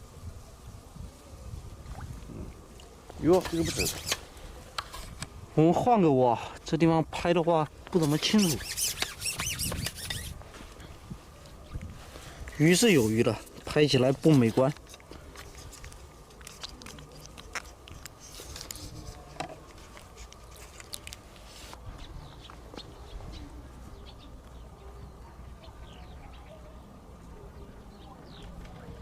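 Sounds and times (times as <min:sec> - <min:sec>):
low outdoor hum: 0:00.0 - 0:29.0
faint bird chirps: 0:22.0 - 0:28.7.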